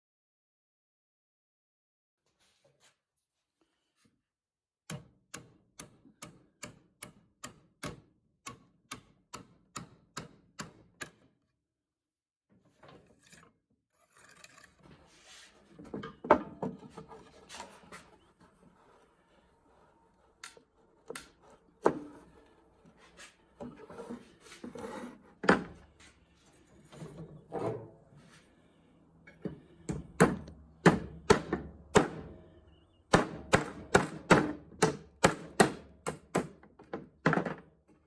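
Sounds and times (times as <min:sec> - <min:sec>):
wood rubbing and scraping: 0:14.1 - 0:30.6.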